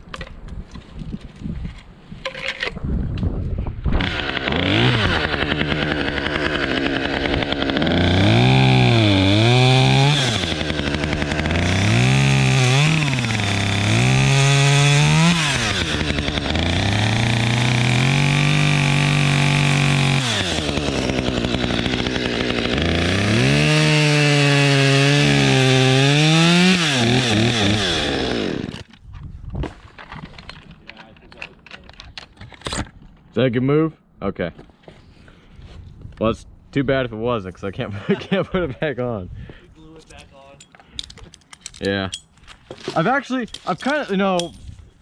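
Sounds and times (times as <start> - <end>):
chainsaw revving and cutting: 4.0 - 28.9.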